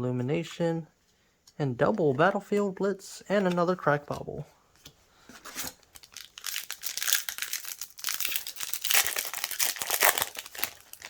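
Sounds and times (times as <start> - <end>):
foil wrapper crinkling and tearing: 5.6 - 11.0.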